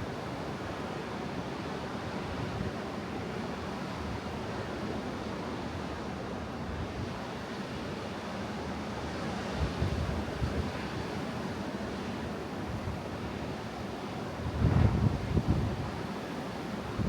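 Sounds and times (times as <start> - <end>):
wind on microphone: 14.4 - 16.0.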